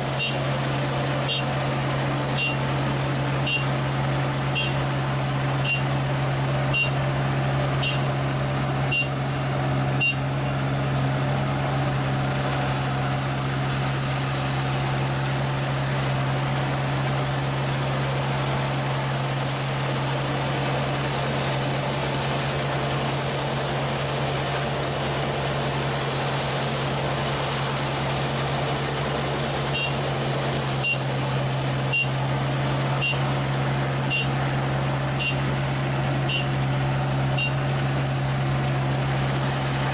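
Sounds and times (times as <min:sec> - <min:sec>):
combine harvester engine drone: 0:00.0 - 0:39.9
high warning beeper: 0:00.2 - 0:00.5, 0:02.3 - 0:02.7, 0:03.4 - 0:03.8, 0:04.5 - 0:04.9, 0:05.6 - 0:06.0, 0:06.7 - 0:07.0, 0:07.8 - 0:08.1, 0:08.9 - 0:09.2, 0:10.0 - 0:10.3, 0:33.0 - 0:33.3, 0:34.1 - 0:34.4, 0:35.2 - 0:35.5, 0:36.2 - 0:36.6, 0:37.3 - 0:37.6.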